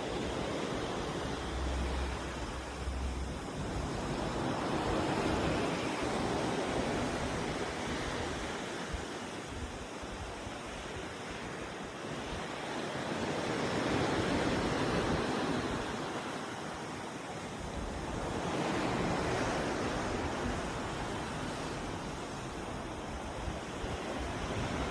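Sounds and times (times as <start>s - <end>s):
wind on microphone: 0.0s - 12.5s, 17.7s - 24.9s
sea water rushing: 0.0s - 24.9s.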